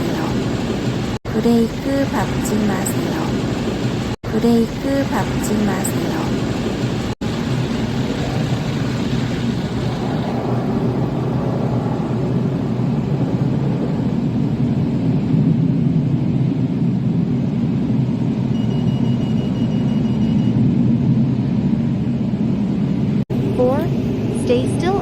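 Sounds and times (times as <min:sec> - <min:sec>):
car wash low rumble: 0:00.0 - 0:25.0.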